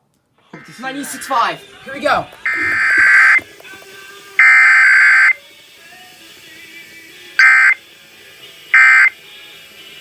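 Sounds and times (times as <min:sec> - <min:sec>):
faint radio hiss: 0:00.1 - 0:09.1
two-tone digital screech: 0:02.4 - 0:03.4, 0:04.4 - 0:05.4, 0:07.4 - 0:07.8, 0:08.8 - 0:09.1.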